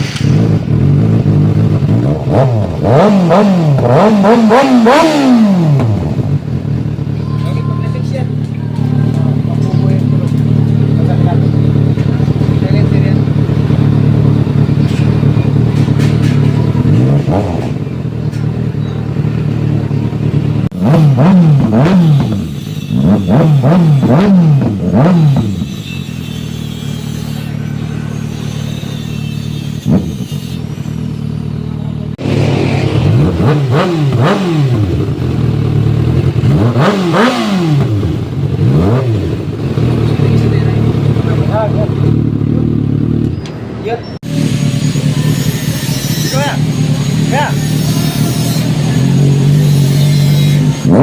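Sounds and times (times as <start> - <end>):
motorcycle engine revving: 0.0 - 51.0
motorcycle engine idling: 5.8 - 20.8, 24.0 - 33.6, 34.2 - 36.6, 37.8 - 50.9.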